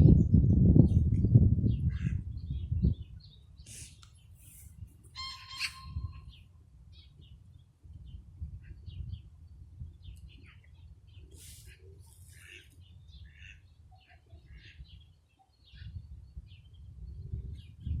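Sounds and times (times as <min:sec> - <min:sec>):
small songbirds chirping: 0:01.7 - 0:18.0.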